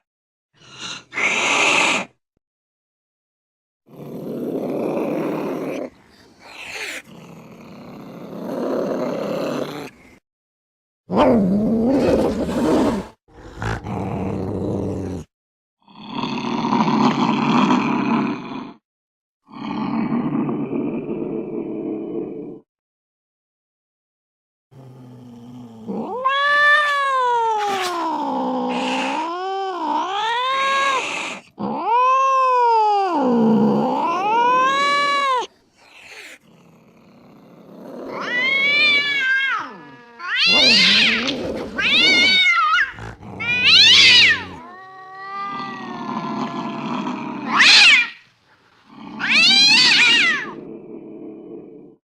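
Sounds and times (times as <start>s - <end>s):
cat yowling: 26.0s - 36.4s, 38.1s - 48.2s, 49.2s - 50.6s.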